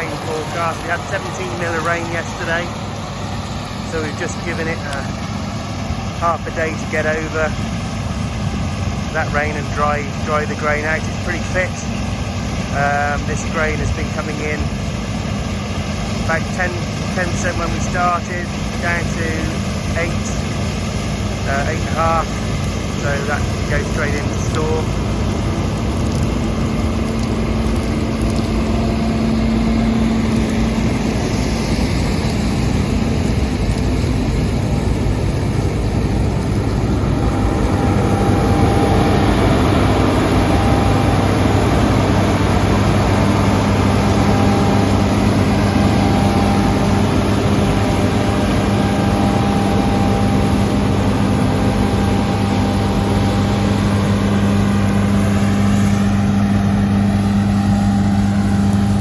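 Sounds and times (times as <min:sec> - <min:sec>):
combine harvester running: 0:00.0 - 0:59.0.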